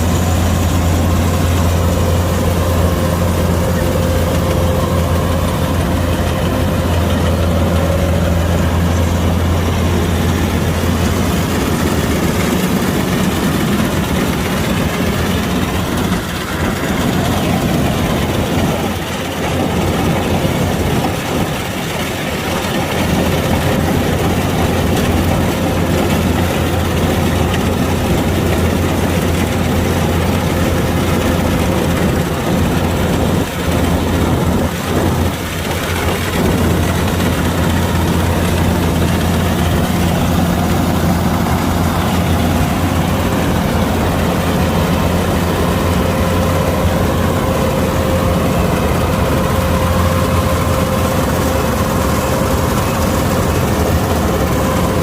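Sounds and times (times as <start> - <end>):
diesel engine running under load: 0.0 - 55.0
machinery noise: 0.0 - 55.0.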